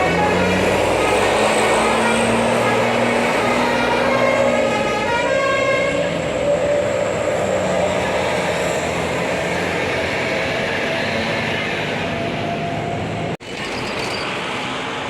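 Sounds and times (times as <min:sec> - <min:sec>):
multi-tone bus air horn melody: 0:00.0 - 0:06.2
bus engine and traffic: 0:00.0 - 0:15.0.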